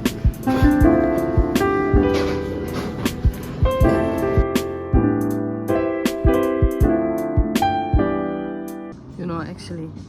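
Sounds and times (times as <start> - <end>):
steady drum beat: 0.0 - 5.1.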